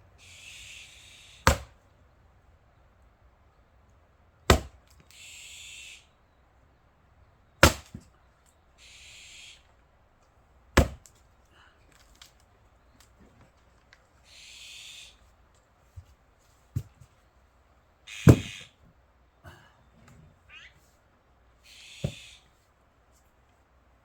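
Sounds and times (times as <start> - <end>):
axe strikes splitting wood: 1.4 - 1.8, 4.5 - 4.8, 7.6 - 8.1, 10.8 - 11.2, 18.2 - 18.5
short hissing noises: 8.8 - 9.6.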